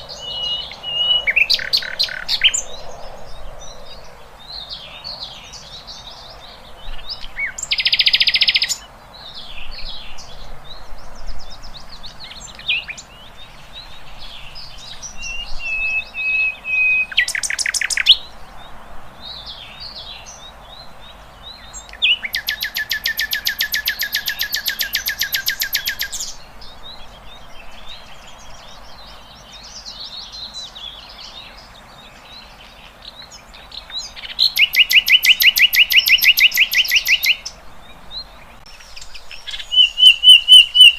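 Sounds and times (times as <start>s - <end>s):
birds chirping and whistling: 0.0s - 18.4s, 19.2s - 40.9s
rapidly pulsed bird trills: 21.6s - 28.8s, 33.0s - 37.6s, 38.6s - 40.9s.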